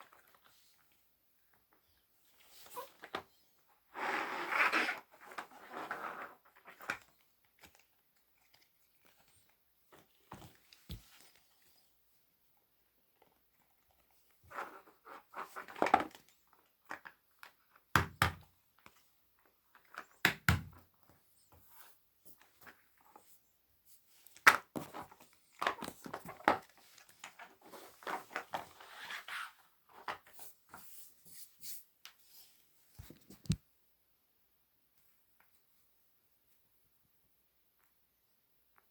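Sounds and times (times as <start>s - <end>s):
silicone toys rustling and crinkling: 4.9s - 12.0s, 13.1s - 17.9s, 21.5s - 33.3s.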